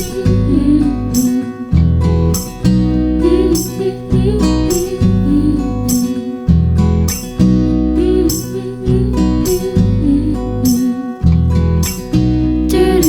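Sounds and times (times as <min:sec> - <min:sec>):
person singing: 0:00.0 - 0:01.8, 0:03.2 - 0:06.5, 0:08.0 - 0:11.2, 0:12.7 - 0:13.0
strummed acoustic guitar with beat: 0:00.0 - 0:13.0.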